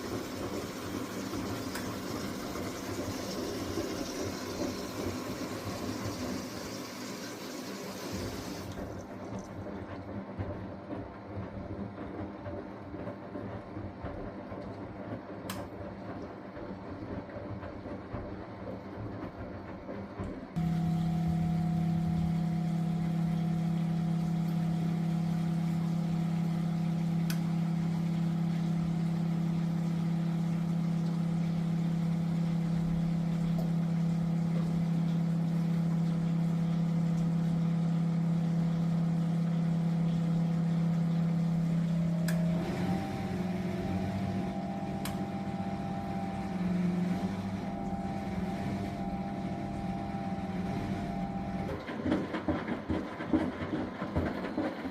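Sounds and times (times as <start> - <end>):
washing machine humming: 0.0 - 54.9.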